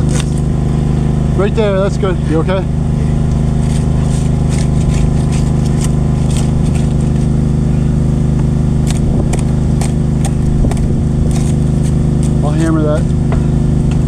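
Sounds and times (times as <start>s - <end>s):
engine running steadily: 0.0s - 14.0s
short scrapes and clicks: 3.6s - 7.3s.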